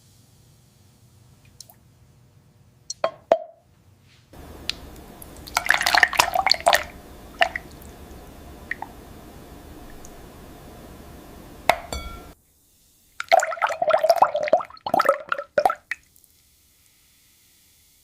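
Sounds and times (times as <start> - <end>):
steady low hum: 4.4 - 13.0
liquid drops plopping: 11.7 - 12.4.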